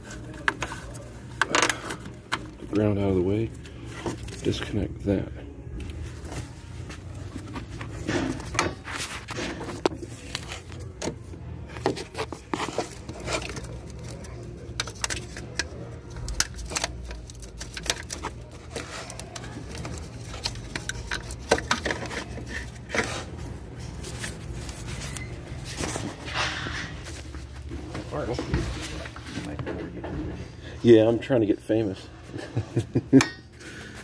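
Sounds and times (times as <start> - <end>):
tools clicking and scraping: 11.8 - 27.3.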